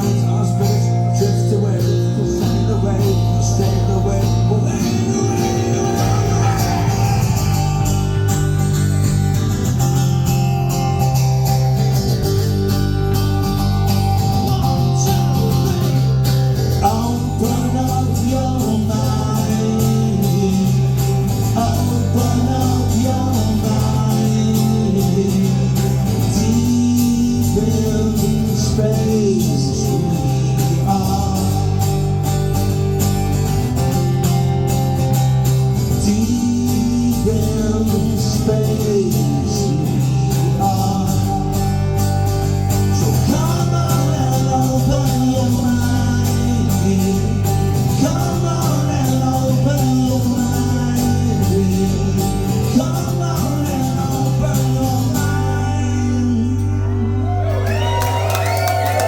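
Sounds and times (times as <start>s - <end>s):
person singing: 0.0s - 9.0s, 14.3s - 32.1s, 42.8s - 59.0s
held bass notes: 0.0s - 59.0s
rock band playing live: 0.0s - 59.0s.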